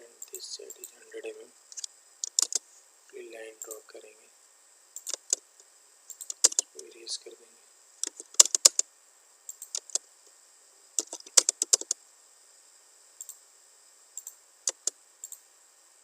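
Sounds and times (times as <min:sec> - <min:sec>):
keyboard typing: 0:01.7 - 0:02.6, 0:05.0 - 0:05.4, 0:06.1 - 0:06.9, 0:08.0 - 0:08.8, 0:09.5 - 0:10.0, 0:11.0 - 0:12.0, 0:14.2 - 0:15.4
mouse clicking: 0:01.7 - 0:02.6, 0:05.0 - 0:05.4, 0:06.1 - 0:06.9, 0:08.0 - 0:08.8, 0:09.5 - 0:10.0, 0:11.0 - 0:12.0, 0:13.2 - 0:13.4, 0:14.2 - 0:15.4.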